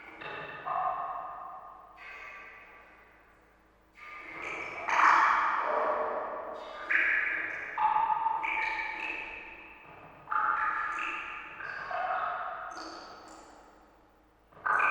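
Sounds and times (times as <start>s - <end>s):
water drops plinking into water: 12.7s - 13.6s.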